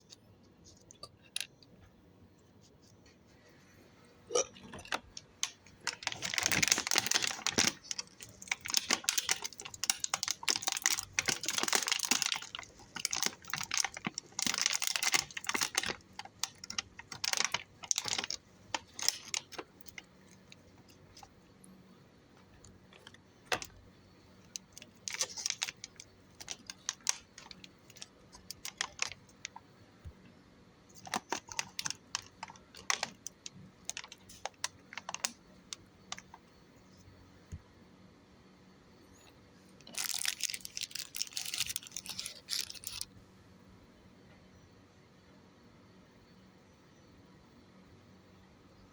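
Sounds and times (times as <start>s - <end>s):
food packaging crinkling: 4.7s - 21.3s, 22.4s - 23.8s, 24.4s - 29.6s, 30.9s - 35.4s, 39.8s - 43.1s.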